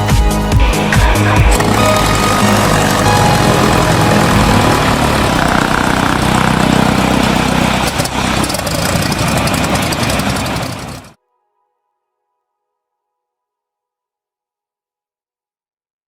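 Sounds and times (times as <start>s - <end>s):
aircraft engine running: 0.6s - 11.2s.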